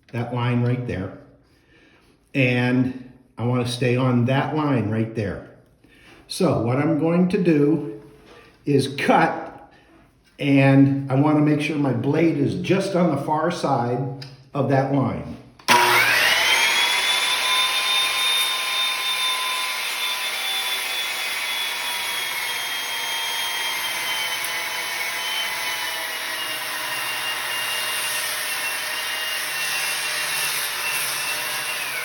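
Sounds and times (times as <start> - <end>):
circular saw cutting wood: 15.6 - 32.0.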